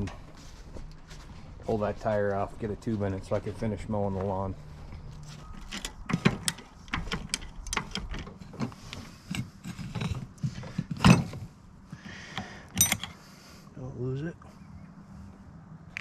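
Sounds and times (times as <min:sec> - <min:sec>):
metallic clicks and clanks: 0:05.6 - 0:10.2, 0:12.4 - 0:13.2.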